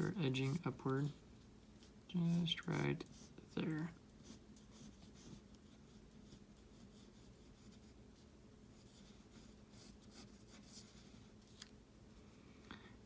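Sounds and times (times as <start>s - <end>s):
drawing tool scratching paper: 4.2s - 8.0s.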